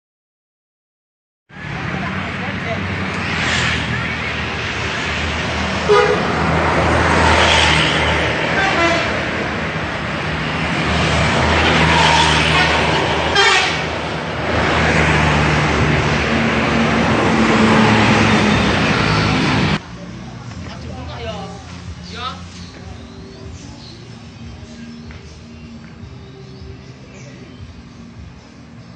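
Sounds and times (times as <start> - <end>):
multi-tone bus horns tooting: 5.7 - 9.7, 11.3 - 14.2.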